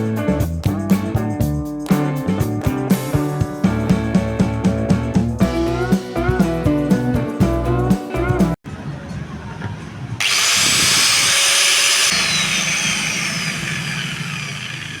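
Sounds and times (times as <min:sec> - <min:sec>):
angle grinder running: 0:10.2 - 0:15.0.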